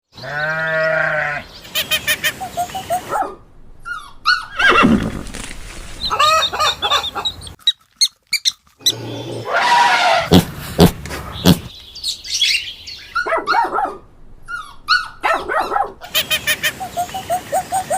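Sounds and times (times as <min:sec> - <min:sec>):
clicking and chirping calls: 0:05.4 - 0:09.4
pitched animal call: 0:08.8 - 0:11.7.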